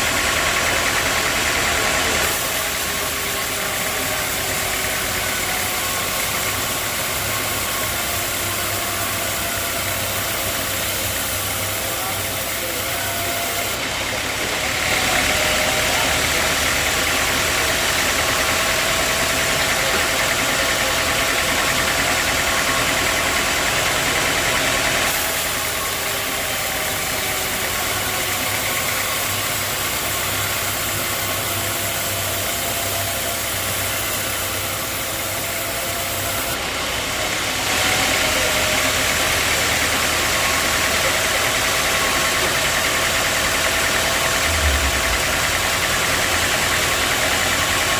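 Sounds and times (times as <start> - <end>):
sawmill machinery running: 0.0 - 47.9.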